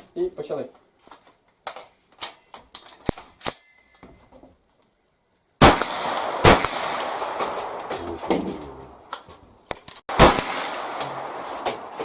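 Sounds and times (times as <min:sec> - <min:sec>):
rifle shots with echo: 0:05.6 - 0:08.4, 0:10.1 - 0:12.0.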